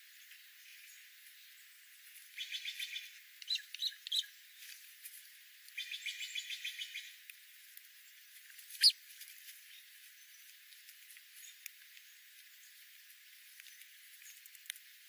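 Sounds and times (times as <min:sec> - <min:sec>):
songbird trilling and chirping: 0:02.4 - 0:04.3, 0:05.7 - 0:07.2, 0:08.8 - 0:09.0.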